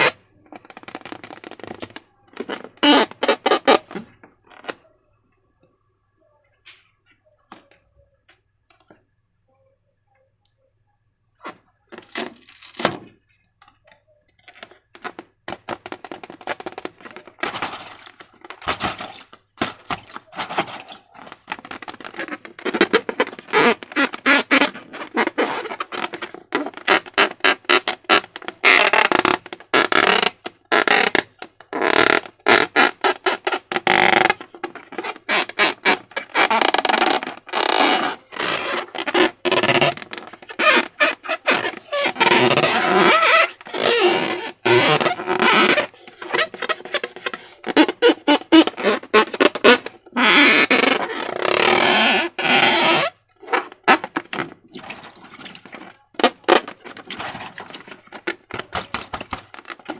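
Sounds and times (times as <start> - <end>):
slime squelching: 37.2 - 59.9.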